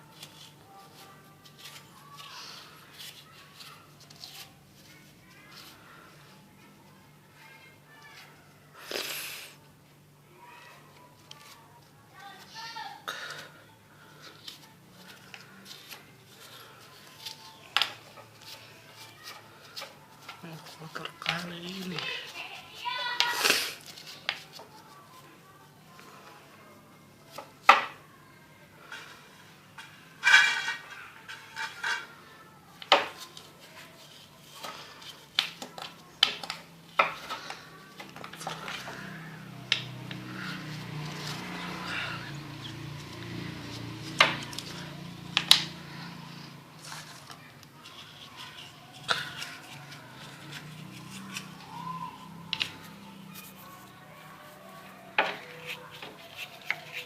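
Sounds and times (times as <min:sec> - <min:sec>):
scraping and scrubbing on engine: 0:40.0 - 0:45.0.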